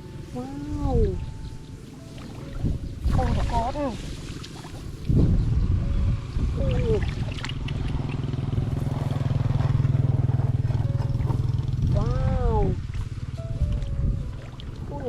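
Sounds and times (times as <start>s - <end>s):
small engine running: 7.6s - 13.5s.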